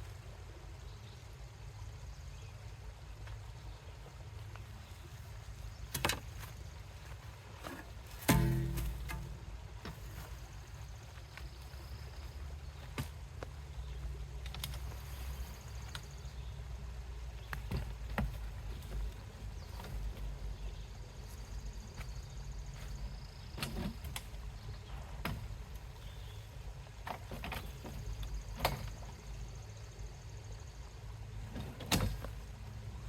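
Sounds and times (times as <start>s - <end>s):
sharp clicks and knocks: 7.6s - 10.0s.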